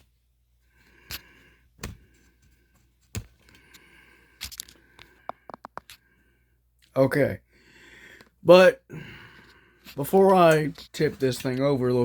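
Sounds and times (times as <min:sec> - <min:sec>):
hands handling plastic laptop case: 0:04.5 - 0:05.9.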